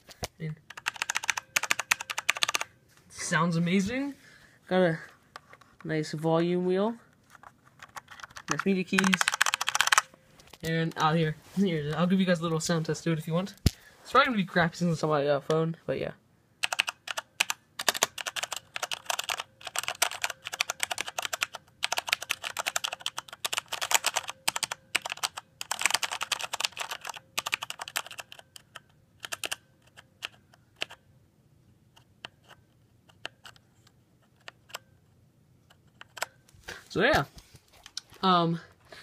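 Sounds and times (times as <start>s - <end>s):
typing on mechanical keyboard: 0.7s - 2.7s, 7.3s - 10.1s, 16.6s - 31.0s.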